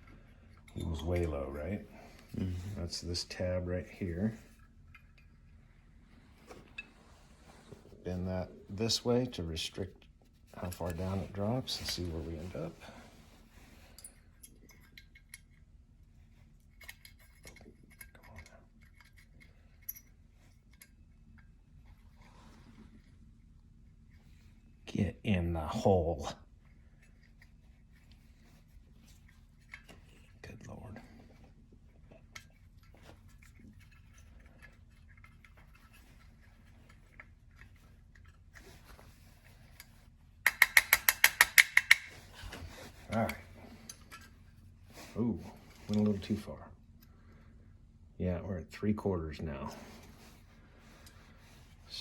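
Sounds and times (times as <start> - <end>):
small metal parts clicking: 16.7 - 20.1, 39.7 - 42.2
clicks of small metal parts and tools: 39.5 - 44.3
sharp metallic clicks: 40.4 - 42.1.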